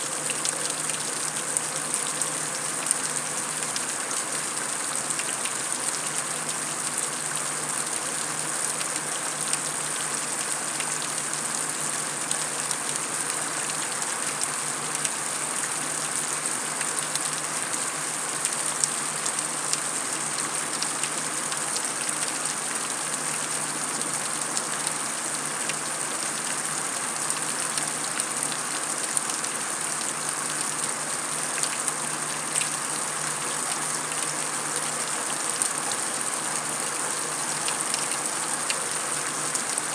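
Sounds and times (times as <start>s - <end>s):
heavy rain on concrete: 0.0s - 39.9s.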